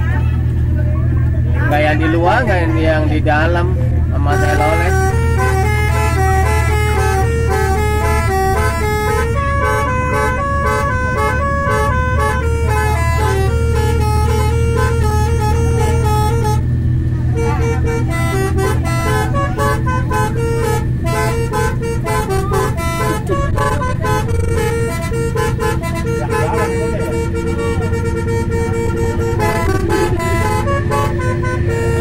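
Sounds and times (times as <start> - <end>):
bus engine rumbling: 0.0 - 32.0
multi-tone air horn melody: 4.2 - 32.0.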